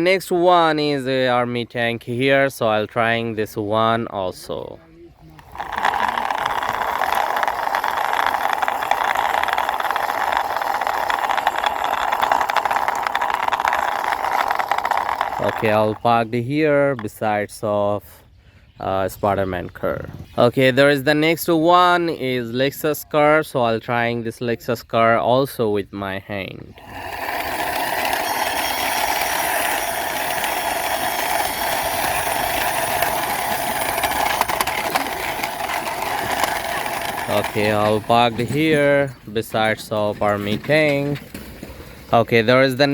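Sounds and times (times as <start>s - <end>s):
toy tank wheels rattling: 5.2s - 17.6s, 26.7s - 42.9s.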